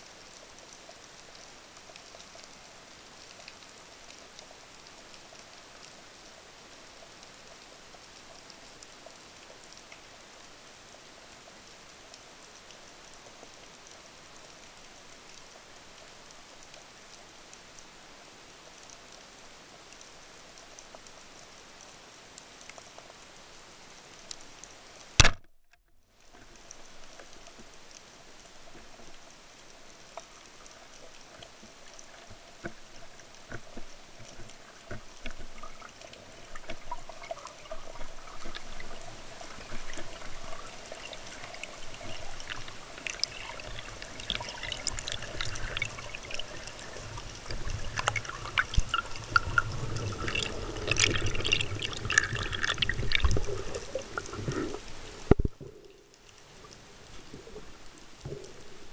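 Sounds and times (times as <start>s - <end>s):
loud sharp click: 25.2s - 25.5s
water sloshing: 31.0s - 55.8s
underwater hiss: 35.6s - 58.9s.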